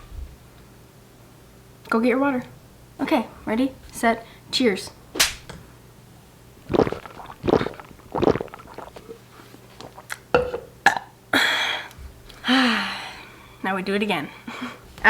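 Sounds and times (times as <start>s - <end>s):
person gulping water: 6.6s - 11.1s.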